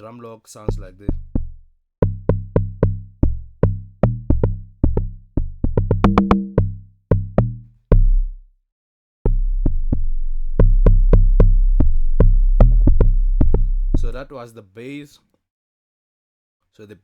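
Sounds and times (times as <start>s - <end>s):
deep log drum hits: 0.7s - 8.3s, 9.3s - 14.3s
held deep bass note: 0.7s - 8.4s, 9.3s - 14.3s.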